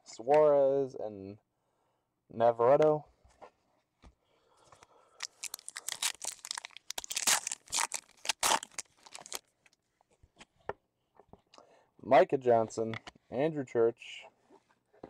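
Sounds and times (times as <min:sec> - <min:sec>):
foil wrapper tearing and crinkling: 0:05.2 - 0:09.5.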